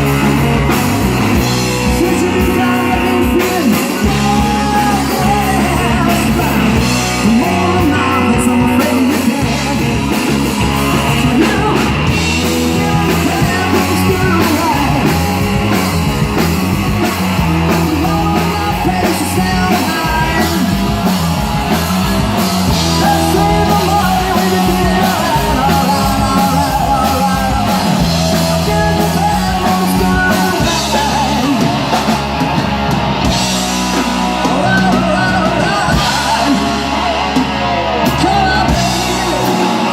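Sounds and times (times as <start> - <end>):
person singing: 0.0 - 16.5, 17.1 - 32.2, 33.5 - 39.9
hard rock band playing: 0.0 - 39.9.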